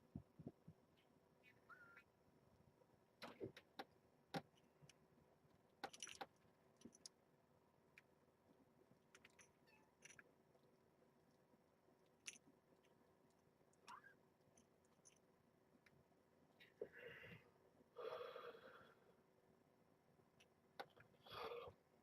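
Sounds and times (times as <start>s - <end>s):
faint clicks and rustles: 0.0s - 16.8s.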